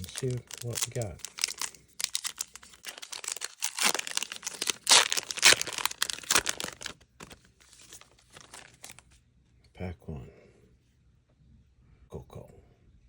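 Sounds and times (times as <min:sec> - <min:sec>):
wrapper crinkling and tearing: 0:00.0 - 0:09.2.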